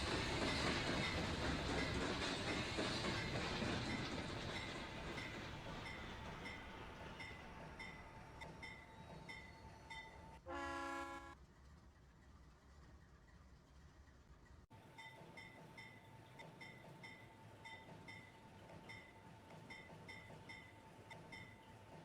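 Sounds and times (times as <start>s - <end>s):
train wheels clicking on rail joints: 0.0s - 10.4s, 11.6s - 22.0s
steam whistle blast: 10.5s - 11.4s.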